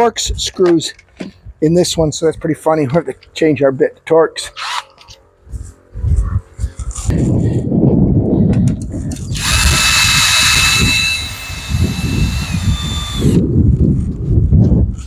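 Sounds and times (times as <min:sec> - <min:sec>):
cordless drill whining: 0:09.3 - 0:13.4.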